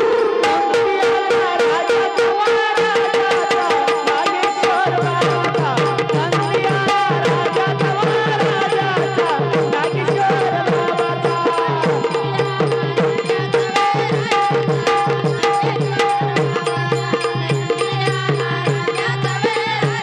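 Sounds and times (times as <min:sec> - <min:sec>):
hand drum rhythm: 0:00.0 - 0:20.0.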